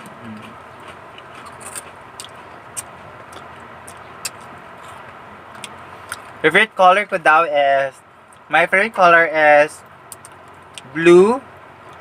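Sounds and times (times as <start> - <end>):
crunchy chewing: 0.0 - 6.4.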